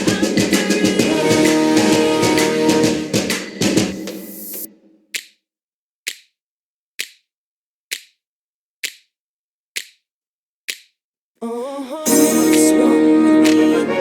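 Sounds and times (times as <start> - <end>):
music: 0.0 - 4.7, 12.0 - 14.0
music with drums: 0.0 - 4.7, 12.1 - 12.8
sharp clicks: 5.1 - 5.4, 6.1 - 6.4, 7.0 - 7.3, 7.9 - 8.2, 8.8 - 9.2, 9.8 - 10.1, 10.7 - 11.0.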